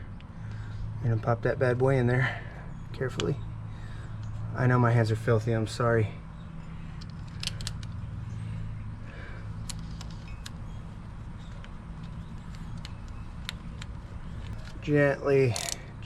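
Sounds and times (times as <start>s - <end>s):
clicks and taps of parts handled: 7.0s - 8.0s, 11.4s - 14.8s.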